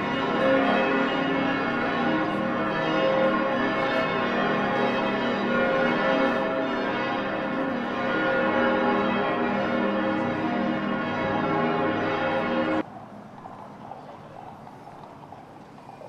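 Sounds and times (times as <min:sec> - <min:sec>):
church bells pealing: 0:00.0 - 0:12.8.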